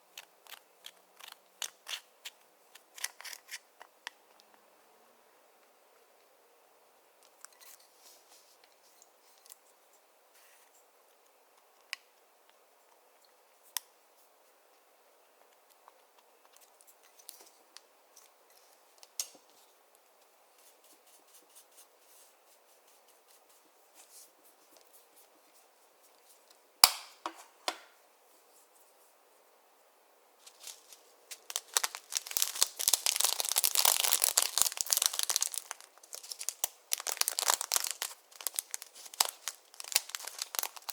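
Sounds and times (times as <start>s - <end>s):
dense slime crackling: 30.6s - 40.9s.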